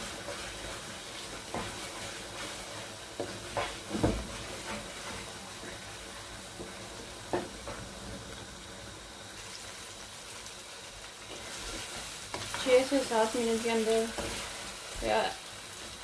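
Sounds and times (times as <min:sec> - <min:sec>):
mixture sizzling in hot oil: 0:00.0 - 0:16.0.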